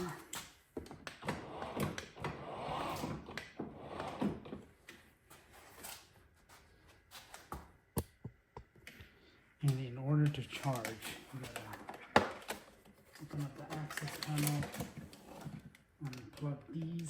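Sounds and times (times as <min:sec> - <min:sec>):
plastic rattling and knocks: 0:10.7 - 0:15.8.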